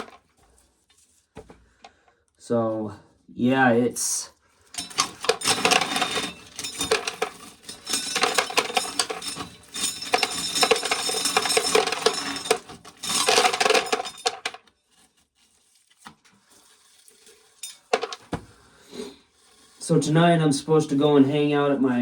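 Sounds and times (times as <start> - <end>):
dry corn kernels rattling: 4.8 - 14.6, 16.4 - 18.3.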